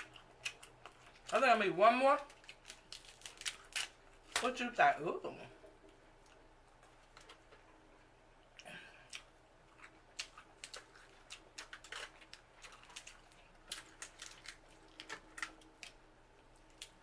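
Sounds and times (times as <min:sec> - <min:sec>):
seafood shells cracking: 0:02.2 - 0:04.5, 0:09.9 - 0:17.0.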